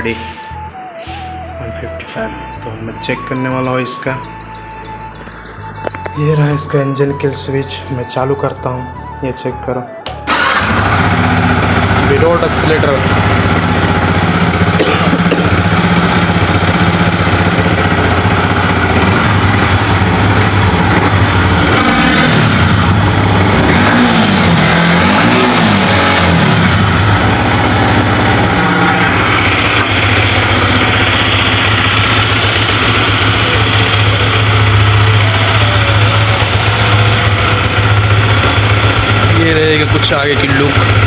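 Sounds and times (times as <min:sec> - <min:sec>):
engine throttle blips: 0:10.0 - 0:41.0
motorcycle engine idling: 0:10.3 - 0:41.0.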